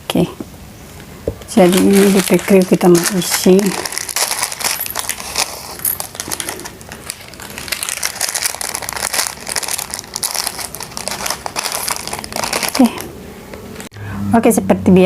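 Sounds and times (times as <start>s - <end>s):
plastic packet crinkling: 1.5s - 13.1s.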